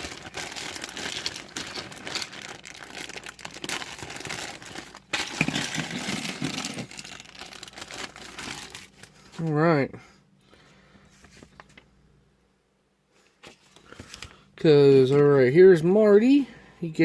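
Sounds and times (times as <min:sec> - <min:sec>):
plastic packaging crinkling: 0:00.0 - 0:09.5.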